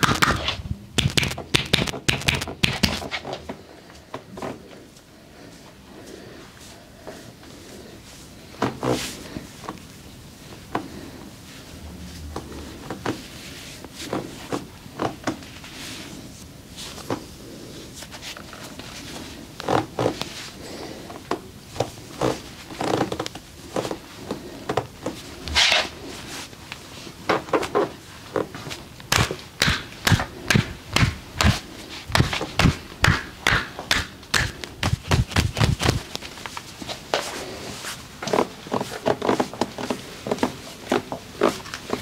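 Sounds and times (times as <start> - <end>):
hands slapping on body: 0.0 - 3.2, 29.1 - 36.2.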